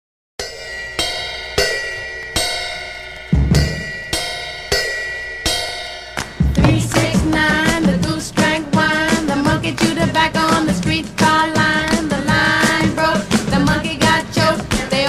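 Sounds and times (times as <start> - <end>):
cymbal crashes: 0.4 - 7.5
heavy bass drum hits: 6.4 - 8.9.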